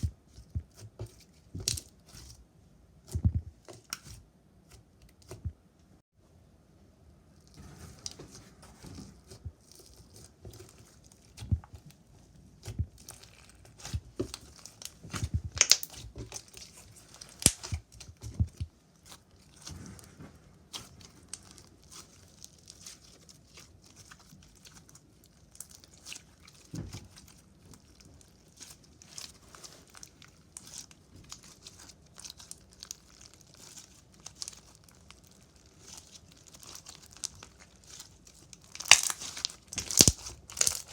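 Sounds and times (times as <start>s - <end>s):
slime crackling and popping: 12.6s - 20.1s, 20.7s - 40.9s.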